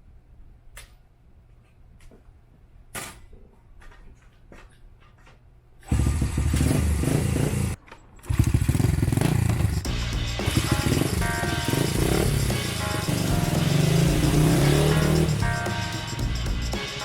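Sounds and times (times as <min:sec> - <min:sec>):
small engine starting and running: 0:05.8 - 0:15.5.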